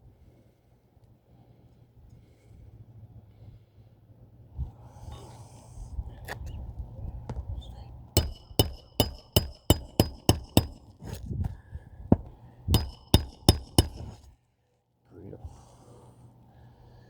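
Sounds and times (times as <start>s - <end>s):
hammer striking metal: 8.2s - 11.0s, 12.2s - 14.3s.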